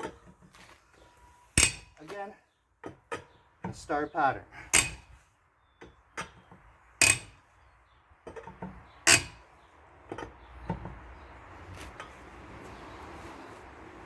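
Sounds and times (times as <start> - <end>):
metallic socket clinks on lug nuts: 7.0 - 7.4.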